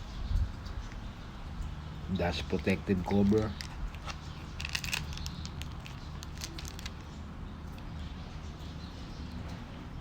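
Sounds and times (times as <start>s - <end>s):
light clicks and rustles: 2.6s - 7.9s.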